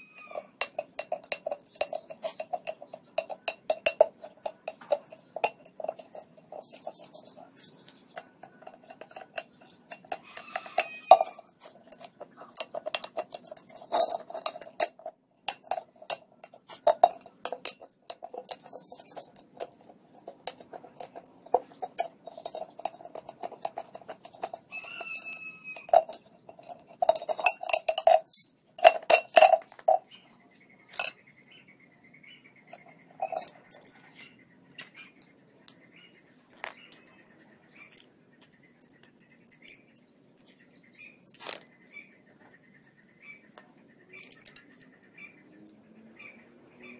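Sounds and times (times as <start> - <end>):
metal kettle clinking and scraping: 0.0 - 30.2, 30.9 - 31.3, 32.7 - 33.9.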